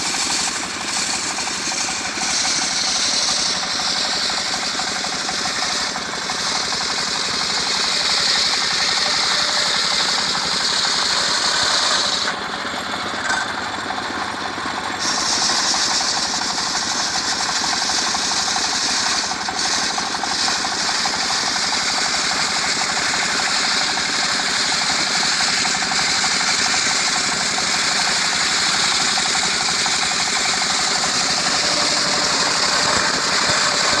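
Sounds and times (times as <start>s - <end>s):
sawmill blade cutting wood: 0.0s - 34.0s.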